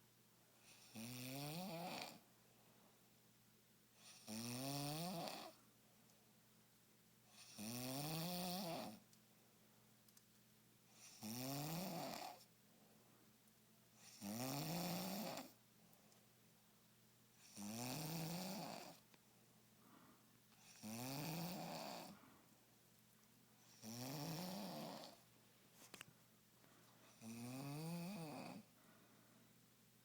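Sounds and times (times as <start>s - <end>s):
person snoring: 0.8s - 2.2s, 4.1s - 5.6s, 7.4s - 9.0s, 14.1s - 15.5s, 17.4s - 19.0s, 20.6s - 22.2s, 23.7s - 25.2s, 27.2s - 28.7s.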